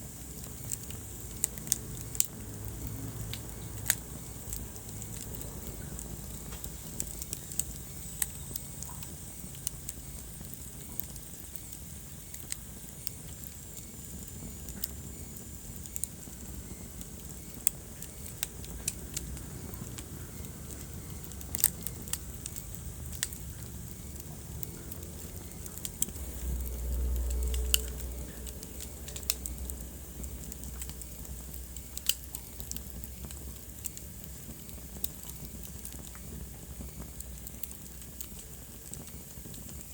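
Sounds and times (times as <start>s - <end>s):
wood fire crackling: 0.0s - 39.9s
low rumble: 18.6s - 31.8s.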